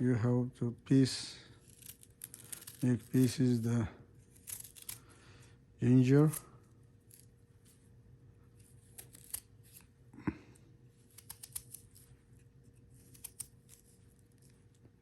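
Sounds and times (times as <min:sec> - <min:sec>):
knife cutting ginger: 0:01.6 - 0:05.2, 0:06.0 - 0:07.3, 0:08.6 - 0:09.9, 0:11.0 - 0:14.5.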